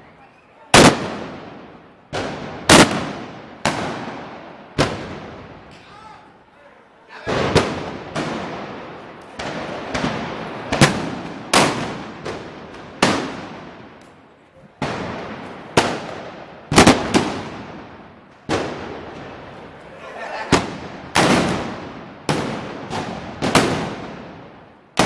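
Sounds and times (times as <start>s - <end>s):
echoing gunpowder bangs: 0.8s - 5.8s, 7.3s - 13.9s, 14.8s - 19.5s, 20.5s - 25.0s.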